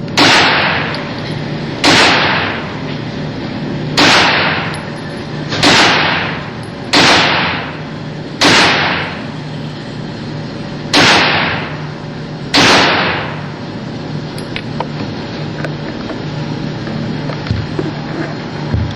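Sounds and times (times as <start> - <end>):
gunshots: 0.2 - 0.9, 1.8 - 2.6, 4.0 - 4.7, 5.5 - 7.8, 8.4 - 9.2, 10.9 - 11.8, 12.5 - 13.5.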